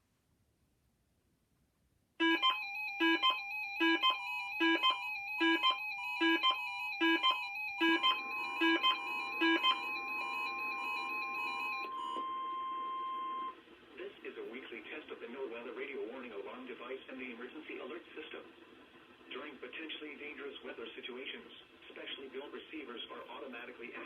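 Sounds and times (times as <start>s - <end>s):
steady high tone: 2.2s - 13.6s
steady warning alarm tone: 2.2s - 13.6s
weather radio alert beeps: 2.2s - 13.6s.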